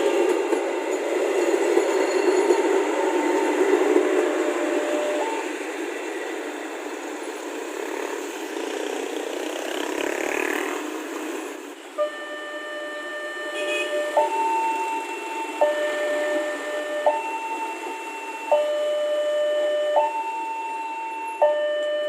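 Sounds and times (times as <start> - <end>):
train rumble: 0.0 - 22.0
level crossing alarm tones: 2.6 - 5.5, 12.0 - 22.0.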